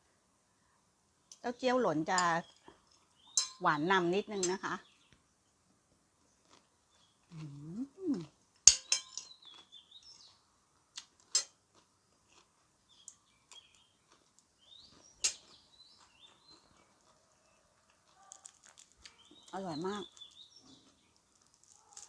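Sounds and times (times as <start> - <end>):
bird chirping: 2.1 - 5.2, 6.9 - 10.4, 12.9 - 17.7, 19.0 - 21.9
closed-mouth hum: 7.3 - 8.3
cutlery clicking on a plate: 8.7 - 9.3, 11.3 - 11.6.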